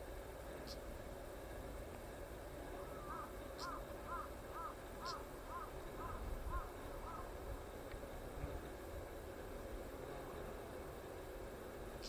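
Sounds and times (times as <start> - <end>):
bird calling: 2.8 - 7.4.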